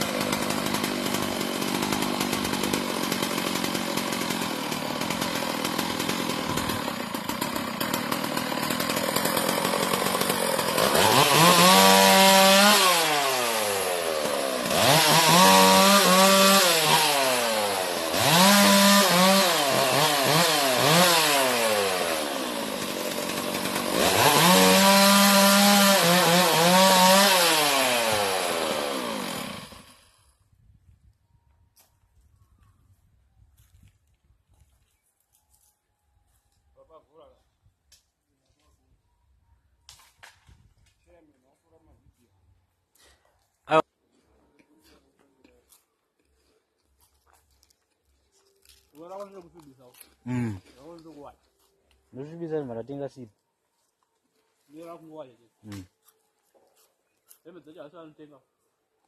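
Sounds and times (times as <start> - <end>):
chainsaw revving and cutting wood: 0.0 - 30.3, 43.7 - 43.9, 48.7 - 51.2, 55.6 - 55.9.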